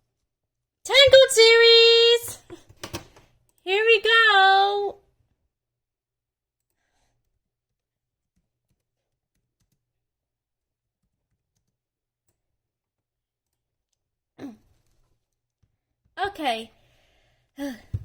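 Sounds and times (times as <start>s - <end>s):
brief voice: 3.7s - 4.9s.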